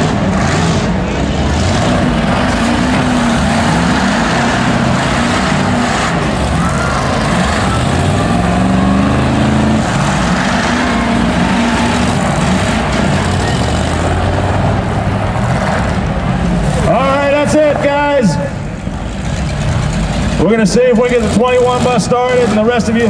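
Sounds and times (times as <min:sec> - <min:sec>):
bus engines revving: 0:00.0 - 0:23.0
background din: 0:00.2 - 0:22.0.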